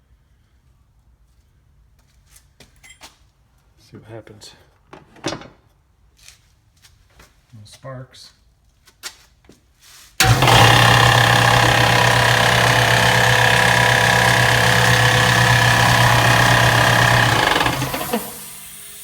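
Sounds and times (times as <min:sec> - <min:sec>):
electric air compressor running: 0:10.2 - 0:19.0.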